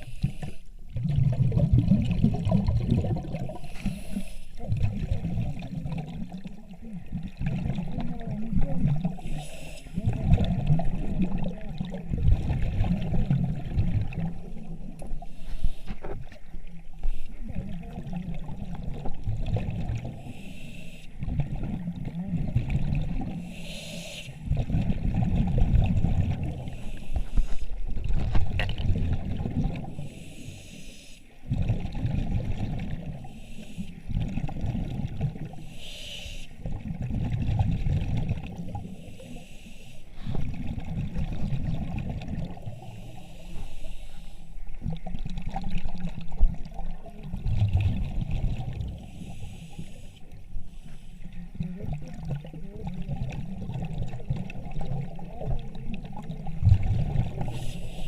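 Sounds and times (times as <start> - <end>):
air bubbling and gurgling: 0.8 - 15.3, 16.0 - 20.4, 21.2 - 23.6, 24.4 - 30.2, 31.4 - 33.4, 34.0 - 35.6, 36.6 - 39.1, 40.2 - 43.2, 44.7 - 49.5, 51.4 - 58.0
diver breathing: 3.5 - 4.6, 9.2 - 10.0, 15.2 - 16.2, 20.1 - 21.2, 23.4 - 24.5, 26.6 - 27.8, 29.9 - 31.5, 33.2 - 34.1, 35.6 - 36.6, 38.8 - 40.6, 42.6 - 44.7, 48.9 - 51.6, 57.4 - 58.0.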